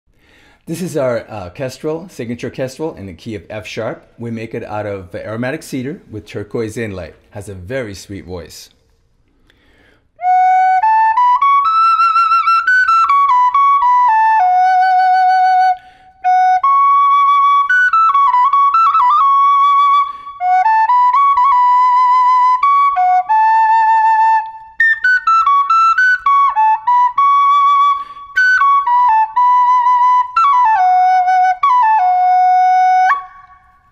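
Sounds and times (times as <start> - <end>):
flute player breathing: 0.1 - 0.7, 9.2 - 10.4, 15.6 - 16.3, 19.9 - 20.6, 27.8 - 28.8
wooden flute melody: 10.2 - 33.9.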